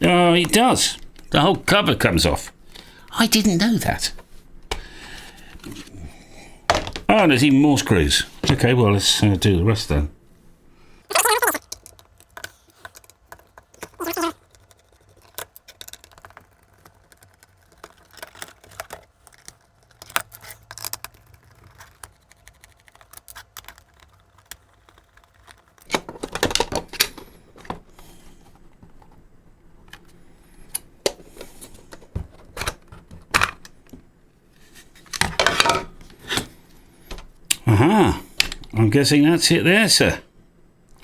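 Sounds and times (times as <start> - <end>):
plastic scraping and rustling: 11.1 - 37.3.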